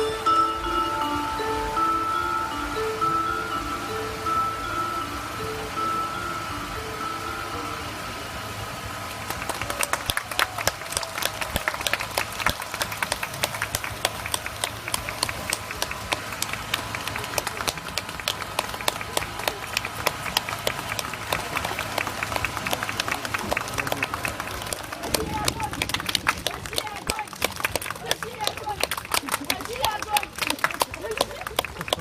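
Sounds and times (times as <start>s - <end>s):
music: 0.0s - 8.4s
audience applauding: 0.0s - 32.0s.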